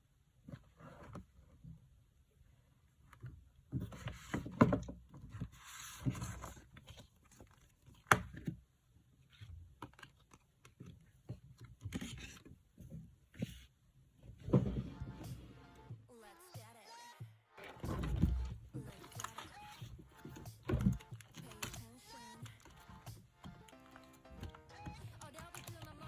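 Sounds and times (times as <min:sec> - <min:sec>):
card and paper rubbing: 0:17.6 - 0:26.0.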